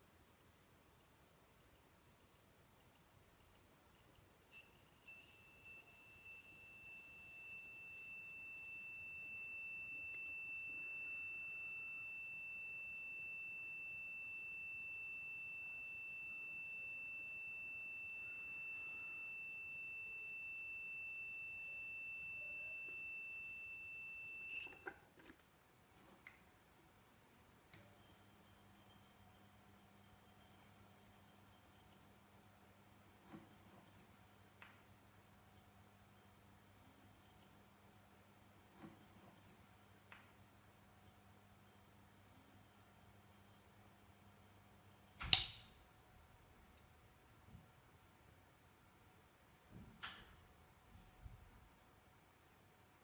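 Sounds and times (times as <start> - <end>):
continuity buzzer tone: 4.5 - 24.9.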